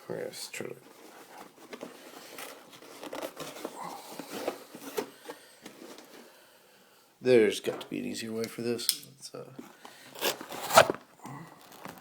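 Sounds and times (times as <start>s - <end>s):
knife cutting tape and cardboard: 10.2s - 11.0s.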